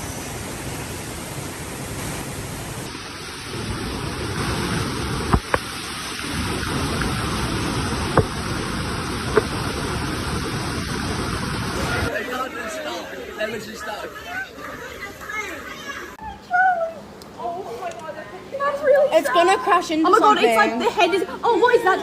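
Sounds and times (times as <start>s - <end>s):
rain falling: 0.0s - 22.0s.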